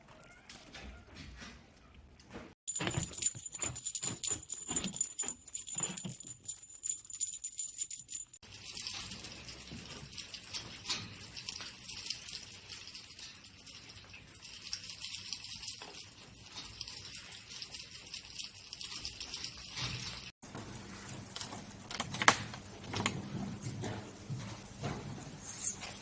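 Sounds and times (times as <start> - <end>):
small bells jingling: 2.7 - 20.4.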